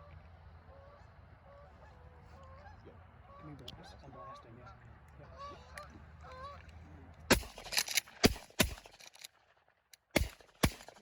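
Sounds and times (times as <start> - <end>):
geese honking: 0.0 - 6.7
shotgun blasts: 7.3 - 11.0.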